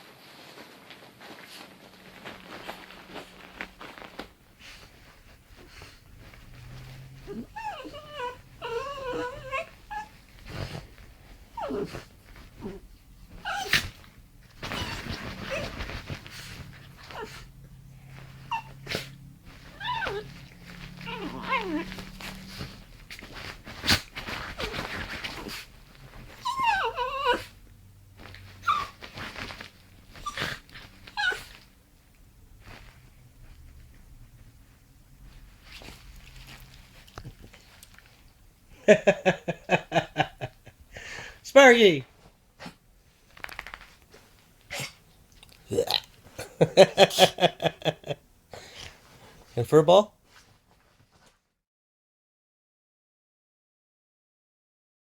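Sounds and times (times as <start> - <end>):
noisy rustle: 0.0 - 51.5
dog whining: 5.6 - 31.7, 44.7 - 45.0.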